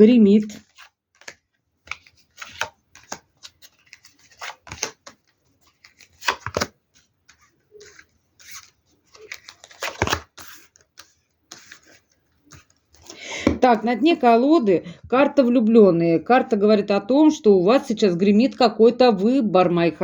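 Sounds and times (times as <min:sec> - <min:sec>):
cards being shuffled: 0:00.4 - 0:13.8.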